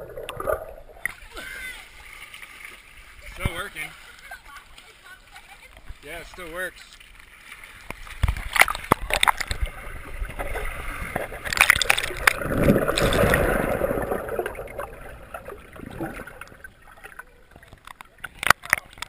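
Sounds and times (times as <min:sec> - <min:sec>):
bubbling water: 0:00.0 - 0:03.8, 0:07.8 - 0:19.0
water splashing and gurgling: 0:00.0 - 0:19.0.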